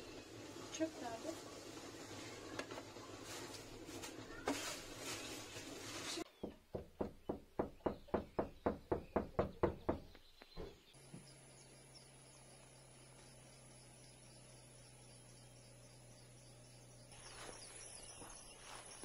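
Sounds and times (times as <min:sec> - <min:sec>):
rustling outdoor noise: 0:00.0 - 0:06.7, 0:09.6 - 0:19.0
high insect chirring: 0:11.0 - 0:19.0.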